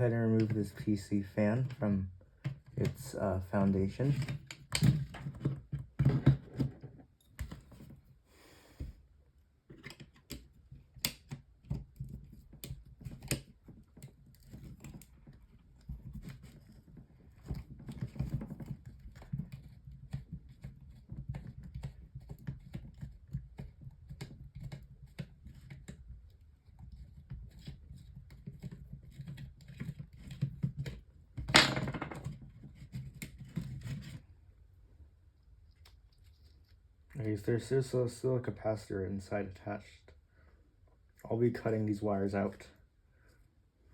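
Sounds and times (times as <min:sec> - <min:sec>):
small plastic parts clicking and rattling: 0:09.7 - 0:34.3.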